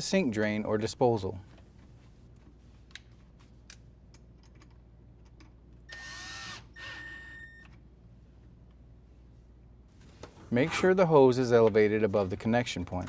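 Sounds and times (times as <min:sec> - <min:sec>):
cordless drill whining: 0:05.9 - 0:07.4.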